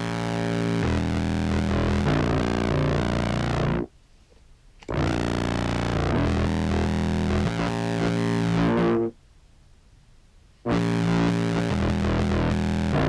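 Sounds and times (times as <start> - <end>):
fuzzed contrabass clarinet tones: 0.0 - 3.9, 4.9 - 9.2, 10.7 - 13.0.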